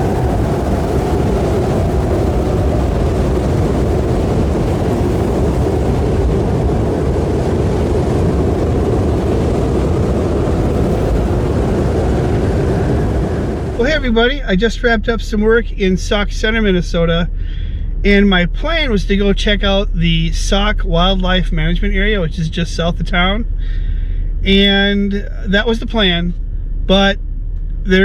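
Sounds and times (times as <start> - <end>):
pickup truck driving: 0.0 - 14.1.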